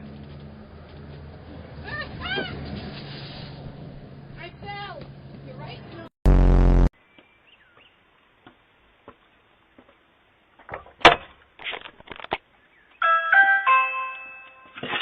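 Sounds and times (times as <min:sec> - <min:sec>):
doorbell chime: 0:13.0 - 0:14.8.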